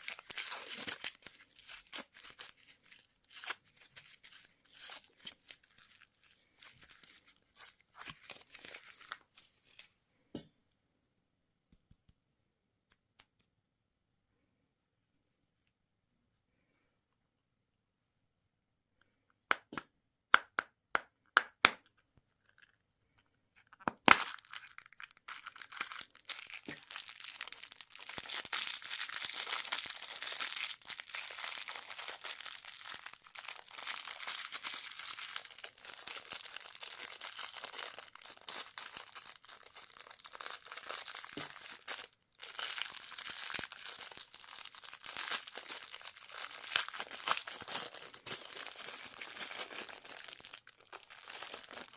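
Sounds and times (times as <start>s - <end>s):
plastic candy wrapper crinkling: 0.0s - 9.9s, 21.9s - 51.9s.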